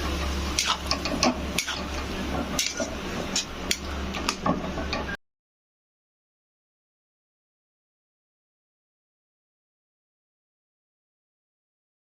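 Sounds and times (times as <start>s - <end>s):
spatula scraping a pan: 0.2s - 5.0s.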